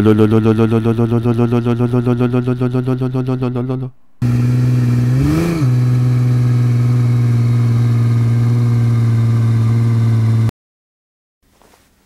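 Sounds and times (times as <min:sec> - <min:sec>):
truck engine running: 0:04.2 - 0:10.5.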